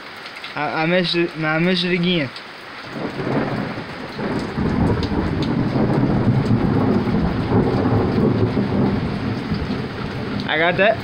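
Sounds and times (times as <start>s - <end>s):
heavy rain falling: 0.0s - 11.0s
thunder rumbling: 2.9s - 11.0s.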